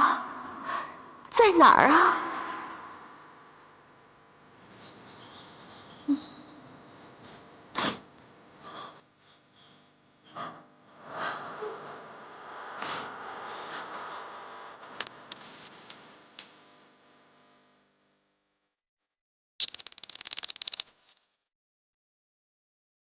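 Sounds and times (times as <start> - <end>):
sharp clicks: 19.6 - 21.1.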